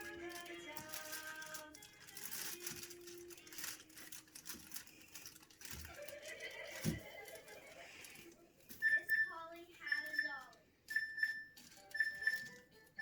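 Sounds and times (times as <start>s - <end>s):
containers clicking and rustling: 0.0s - 8.8s.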